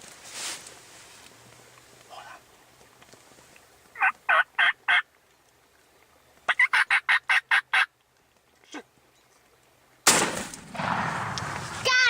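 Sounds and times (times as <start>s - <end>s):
turkey yelping: 4.0s - 5.0s, 6.5s - 7.9s.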